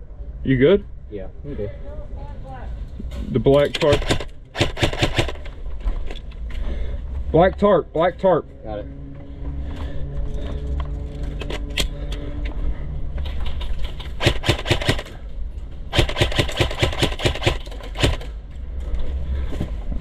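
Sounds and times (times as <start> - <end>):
airsoft rifle rapid firing: 3.8 - 5.5, 14.2 - 15.2, 15.9 - 18.4
low rumble: 5.4 - 16.0, 17.6 - 20.0.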